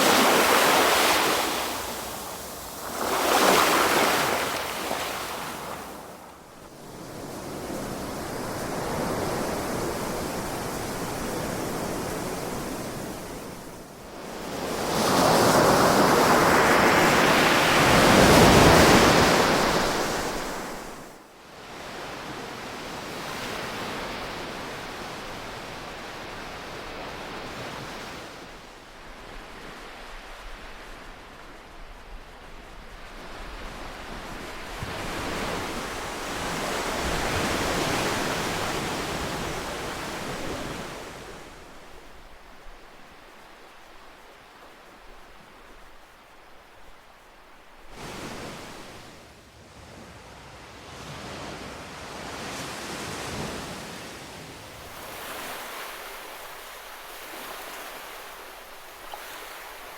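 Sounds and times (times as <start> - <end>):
ocean waves breaking: 0.0 - 13.7.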